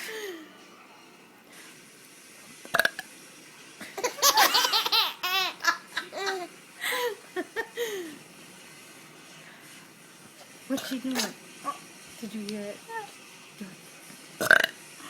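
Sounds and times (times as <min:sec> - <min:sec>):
baby laughing: 0:04.0 - 0:08.2.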